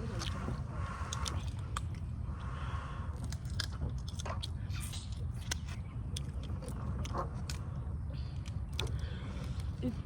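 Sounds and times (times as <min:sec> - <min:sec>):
seafood cracking and clicking: 0:03.2 - 0:07.7.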